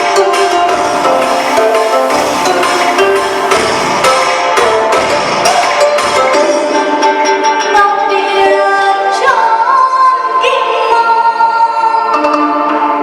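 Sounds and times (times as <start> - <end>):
instrumental accompaniment: 0.0 - 7.6.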